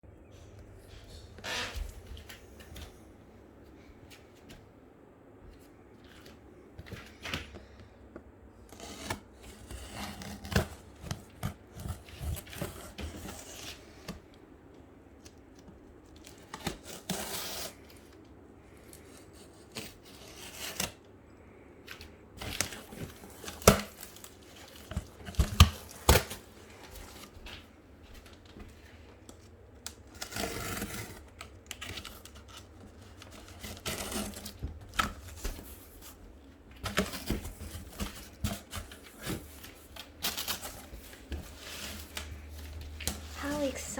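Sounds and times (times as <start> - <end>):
packaging tearing and rustling: 29.8 - 36.2, 36.8 - 43.8.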